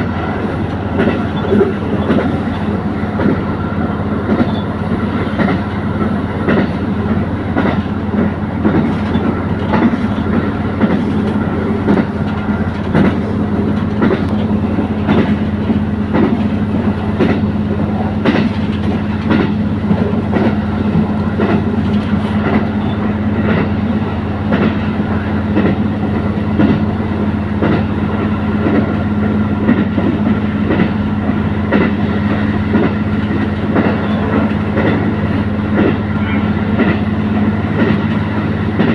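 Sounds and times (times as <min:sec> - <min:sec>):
train engine drone: 0:00.0 - 0:38.9.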